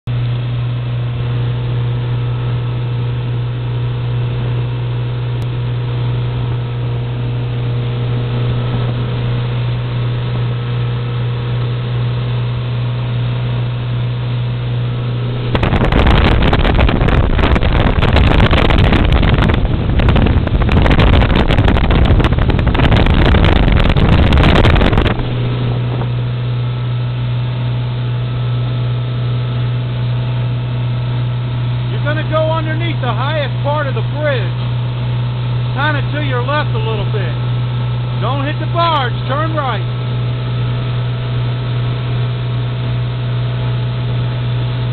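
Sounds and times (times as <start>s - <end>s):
motorboat engine droning: 0.0s - 44.9s
loud rushing noise: 14.6s - 26.7s.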